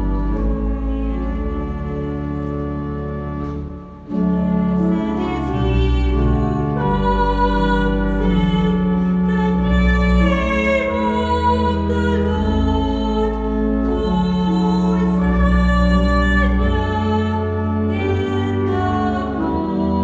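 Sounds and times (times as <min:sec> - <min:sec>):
church music with singing: 0:00.0 - 0:20.0.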